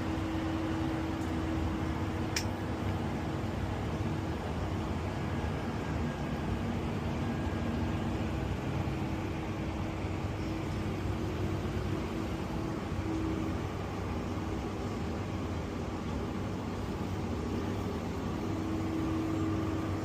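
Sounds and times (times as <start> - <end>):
low mechanical hum: 0.0 - 20.0
faint steady tone: 4.4 - 20.0.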